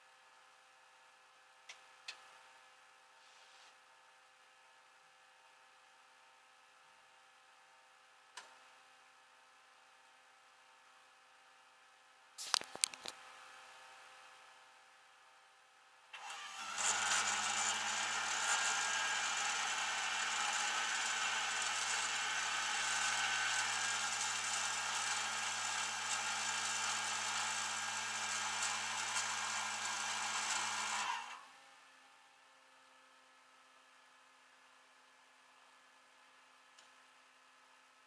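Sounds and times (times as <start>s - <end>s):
motor humming: 16.2s - 31.4s.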